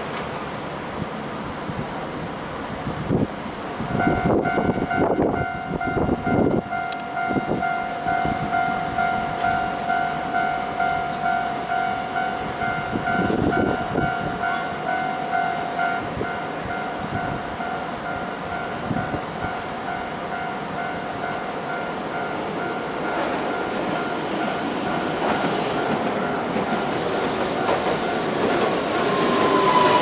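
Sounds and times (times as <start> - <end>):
wind rumbling on microphone: 1.0 - 9.6, 12.4 - 14.6, 18.8 - 19.6
level-crossing warning bell: 3.8 - 30.0.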